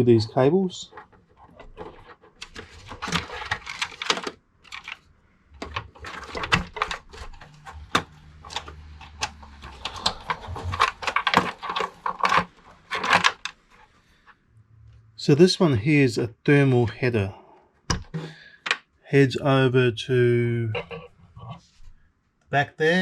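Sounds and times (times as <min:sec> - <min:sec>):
plastic clicks and rattling of cables: 0:00.9 - 0:13.7.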